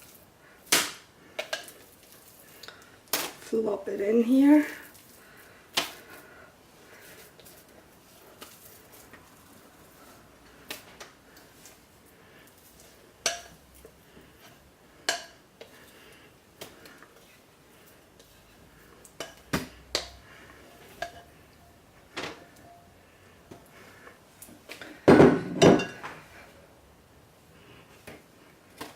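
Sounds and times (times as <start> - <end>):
spatula scraping a bowl: 17.2 - 21.4.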